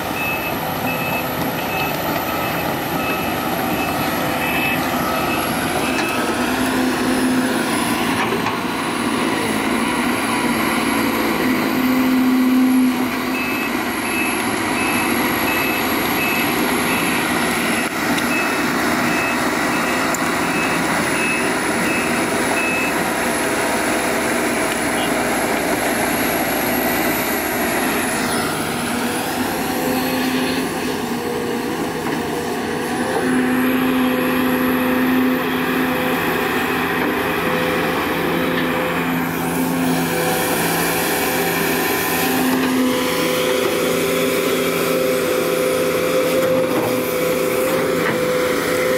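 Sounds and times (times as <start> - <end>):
reversing alarm beeping: 0.0 - 7.1, 11.8 - 23.1
excavator engine and hydraulics: 0.0 - 48.9.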